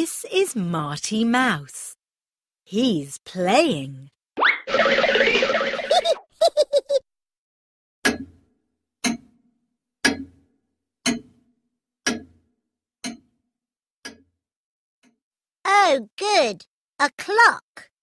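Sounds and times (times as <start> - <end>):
clock ticking: 9.0 - 9.3, 11.0 - 11.4, 12.0 - 12.3, 13.0 - 13.3.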